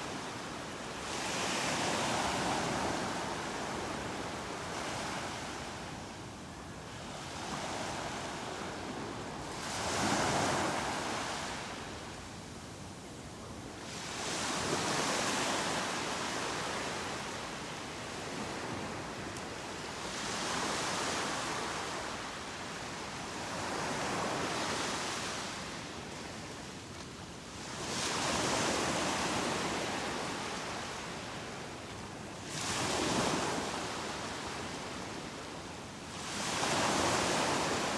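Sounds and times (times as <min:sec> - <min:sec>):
ocean waves breaking on beach: 0:36.2 - 0:37.9.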